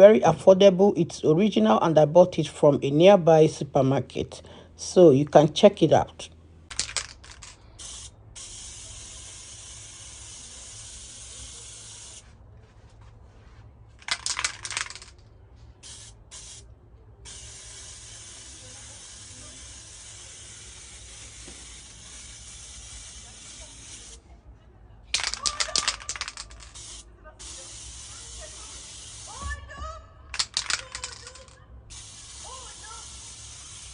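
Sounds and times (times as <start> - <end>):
aerosol spray can hissing: 6.7 - 12.4, 15.8 - 24.2, 25.2 - 29.4, 30.4 - 33.9
sharp clicks clattering: 25.2 - 26.7, 30.4 - 31.6.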